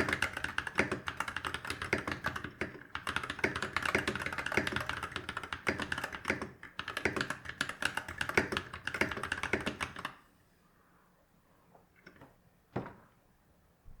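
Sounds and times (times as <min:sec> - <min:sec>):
fast mechanical keyboard typing: 0:00.0 - 0:10.2.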